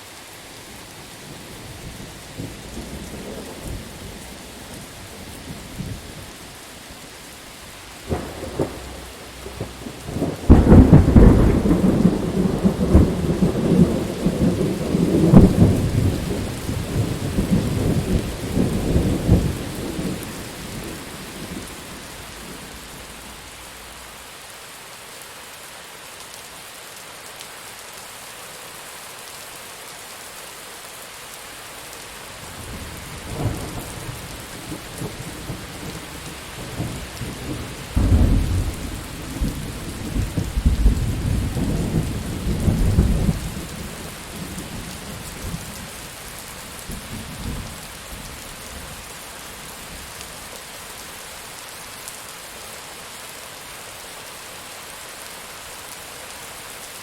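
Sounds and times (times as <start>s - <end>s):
heavy rain hissing: 0.0s - 57.0s
rolling thunder: 8.1s - 24.0s, 32.6s - 45.8s.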